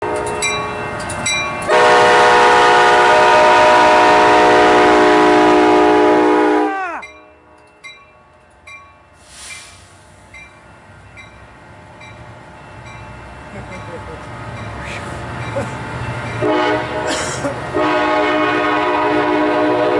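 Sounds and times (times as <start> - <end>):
train air horn blast: 1.7 - 7.0, 16.4 - 19.9.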